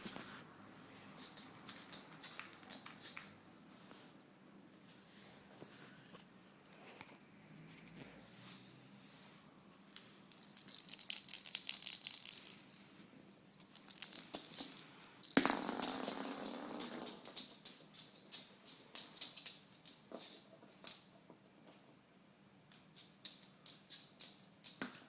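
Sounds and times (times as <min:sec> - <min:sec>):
bell toy jingling: 0:10.2 - 0:12.9, 0:13.5 - 0:18.4.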